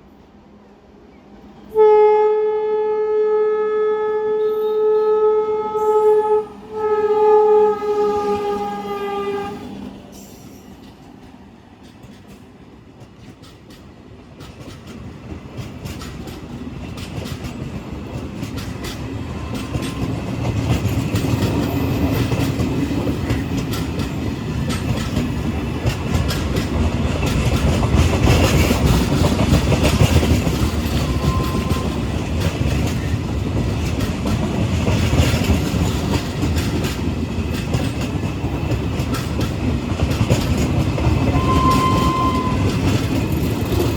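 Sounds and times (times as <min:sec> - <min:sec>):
train passing at high speed: 0:00.0 - 0:43.9
wheels clacking over rail joints: 0:10.2 - 0:43.9.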